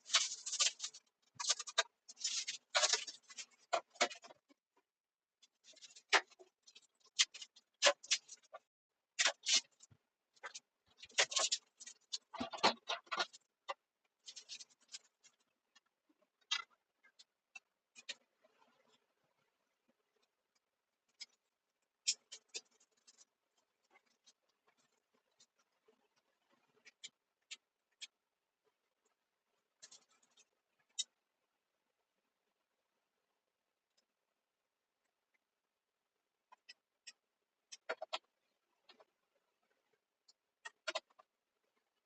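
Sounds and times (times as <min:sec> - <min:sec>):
rustling: 0:00.0 - 0:04.5.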